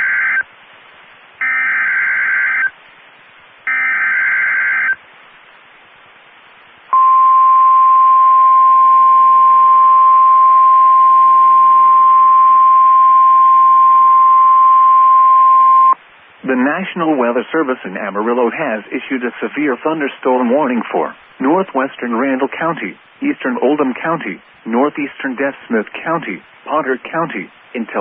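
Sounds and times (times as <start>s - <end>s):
steady loud alarm tone: 3.7s - 5.0s
radio hiss: 15.9s - 28.0s.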